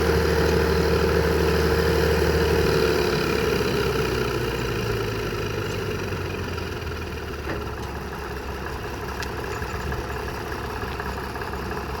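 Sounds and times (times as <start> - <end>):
sawmill idling: 0.0 - 12.0.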